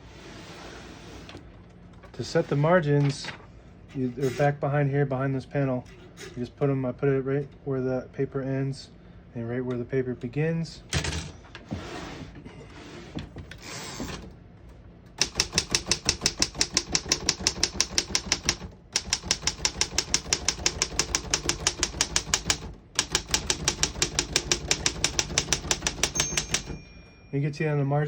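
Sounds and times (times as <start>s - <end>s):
typewriter typing: 15.2s - 26.8s.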